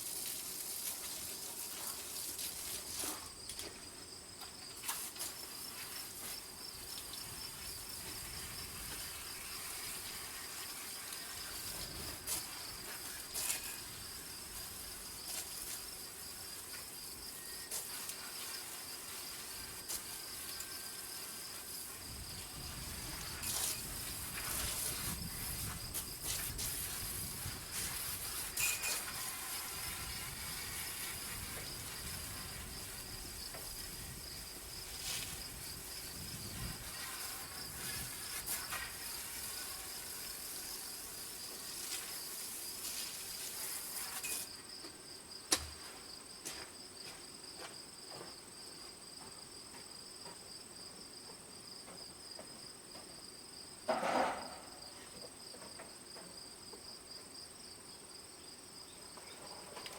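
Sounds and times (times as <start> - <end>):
cricket trill: 0.1 - 59.9
short scrapes or knocks: 53.9 - 54.9.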